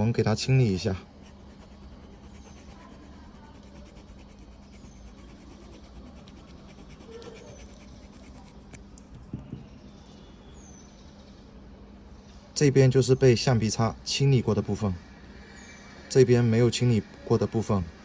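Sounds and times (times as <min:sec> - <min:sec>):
eraser scratching on contacts: 0:01.1 - 0:09.0.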